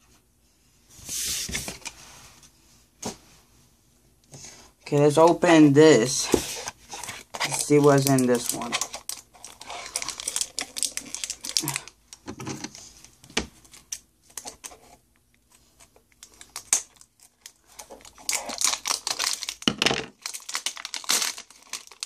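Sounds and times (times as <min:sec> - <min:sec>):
foil wrapper crackling: 0:07.5 - 0:12.0, 0:16.2 - 0:22.0.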